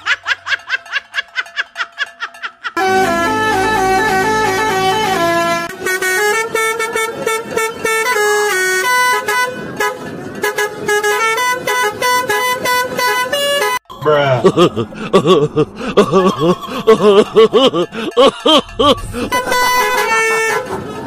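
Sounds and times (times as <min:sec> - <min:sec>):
multi-tone bus horn melody: 0:02.8 - 0:13.9, 0:18.9 - 0:21.0.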